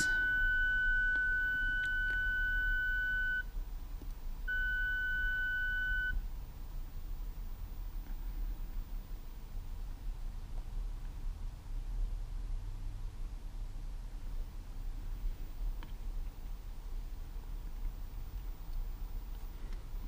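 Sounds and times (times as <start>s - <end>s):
car warning chime beep: 0.0s - 3.5s, 4.5s - 6.2s.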